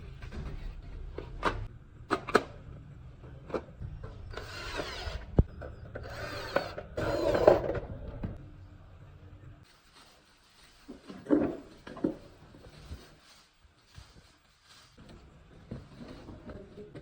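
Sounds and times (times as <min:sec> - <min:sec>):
power drill running: 0:04.3 - 0:07.9.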